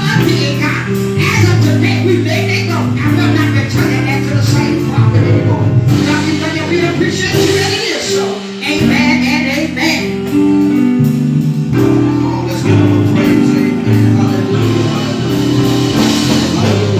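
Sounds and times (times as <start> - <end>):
held instrumental chords: 0.0 - 16.9
person singing: 11.9 - 16.9.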